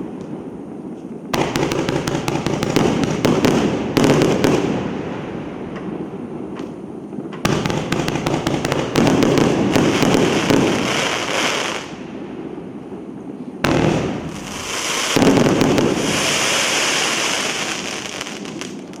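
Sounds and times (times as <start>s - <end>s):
fireworks bangs: 0.0s - 19.0s
fireworks crackling and hiss: 0.0s - 19.0s.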